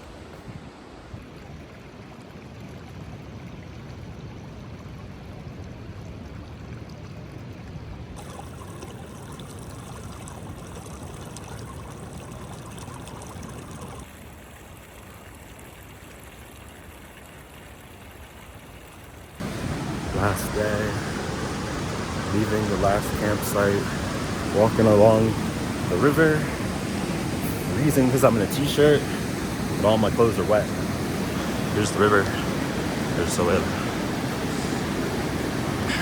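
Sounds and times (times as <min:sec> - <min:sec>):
river water rushing: 0:19.4 - 0:36.0.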